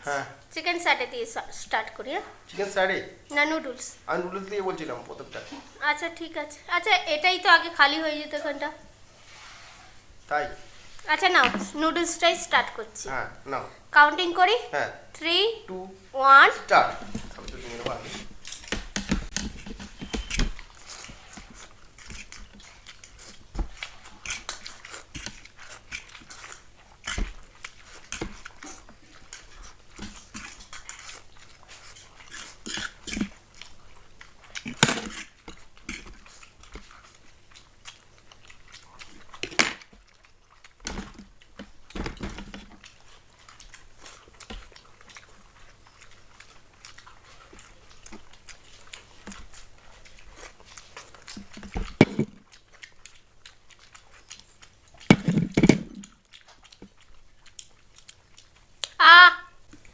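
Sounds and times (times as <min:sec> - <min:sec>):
people chewing and slurping: 0:05.0 - 0:06.2, 0:09.0 - 0:12.8, 0:16.9 - 0:59.9.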